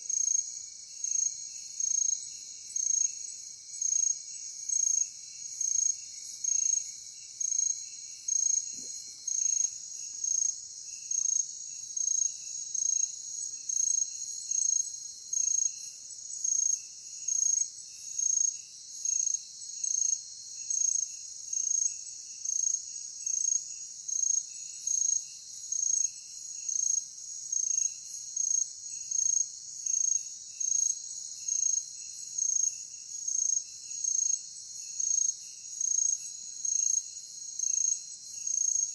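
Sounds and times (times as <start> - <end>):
cricket chirping loudly: 7.4 - 15.7.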